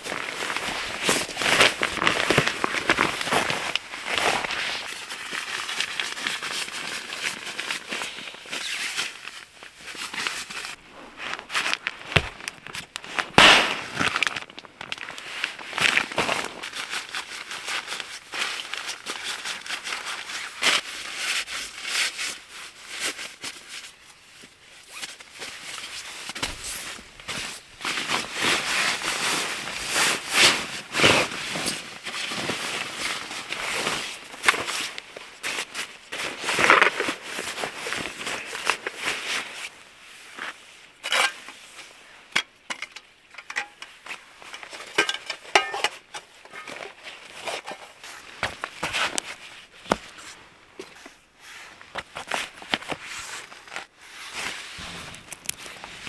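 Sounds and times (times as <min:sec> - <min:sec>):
campfire crackling and popping: 0:54.8 - 0:56.0.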